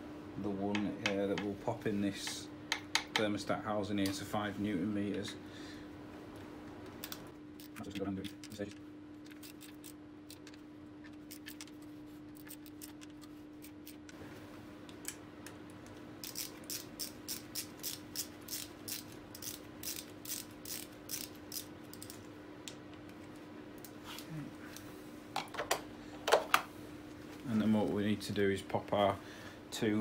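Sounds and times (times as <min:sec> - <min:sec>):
faint steady hum: 0:00.0 - 0:30.0
hand ratchet clicking: 0:16.2 - 0:22.2.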